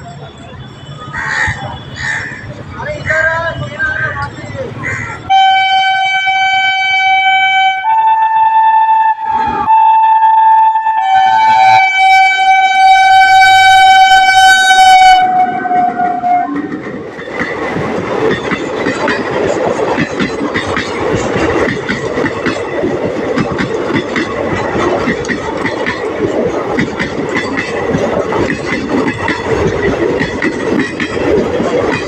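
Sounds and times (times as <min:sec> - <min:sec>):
melodious locomotive horn: 0:05.3 - 0:16.8
train wheels clattering over rail joints: 0:15.7 - 0:32.0.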